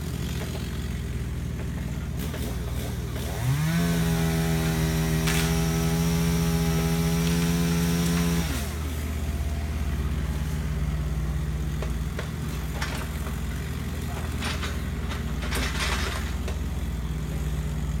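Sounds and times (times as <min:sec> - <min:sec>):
large engine idling: 0:00.0 - 0:03.6, 0:08.2 - 0:18.0
knocks and clatters: 0:11.7 - 0:16.7.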